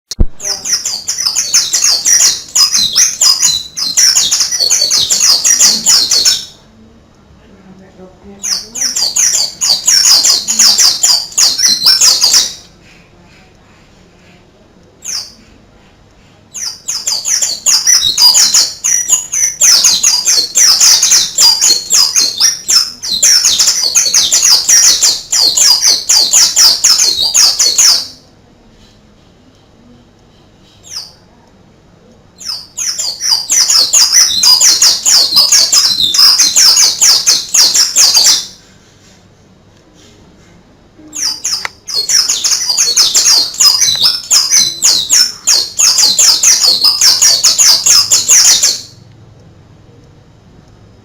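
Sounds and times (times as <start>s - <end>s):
bird singing fast high song: 0.3s - 6.6s, 8.4s - 12.7s, 16.6s - 28.3s, 32.4s - 38.7s, 41.1s - 49.0s.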